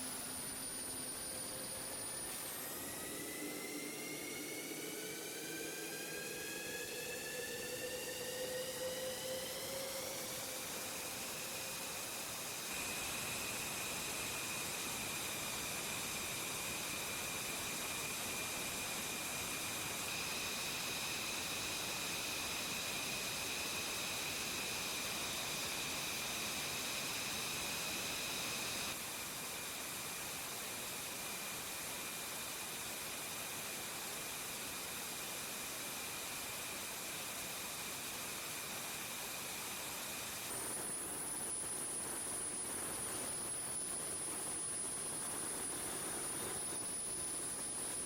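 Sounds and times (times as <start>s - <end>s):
jet engine turbine whine: 0.0s - 48.0s
high-pitched whistle: 0.5s - 10.8s.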